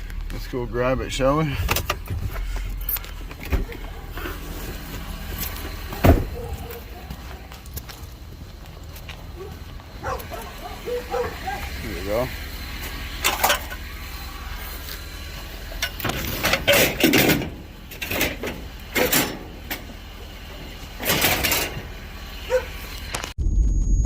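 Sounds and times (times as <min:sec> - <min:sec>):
scrap metal clanking: 0:12.9 - 0:13.9, 0:15.7 - 0:19.9, 0:20.6 - 0:21.9.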